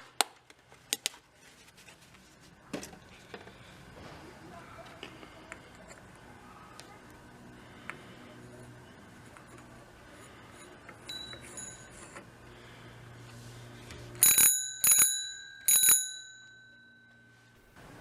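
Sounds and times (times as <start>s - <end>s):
bicycle bell ringing: 11.0s - 12.2s, 14.2s - 17.7s.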